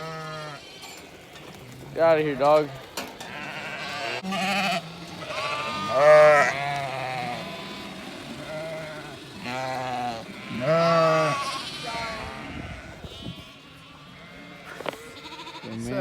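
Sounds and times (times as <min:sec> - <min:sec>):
lambs bleating: 0:00.0 - 0:00.6, 0:03.2 - 0:16.0.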